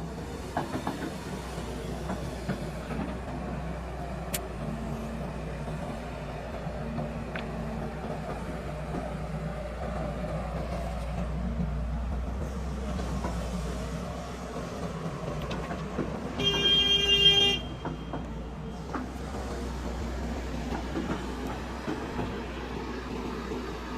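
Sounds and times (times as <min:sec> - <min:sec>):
heavy diesel engine running: 0:00.0 - 0:23.9
vehicle horn: 0:16.4 - 0:17.8.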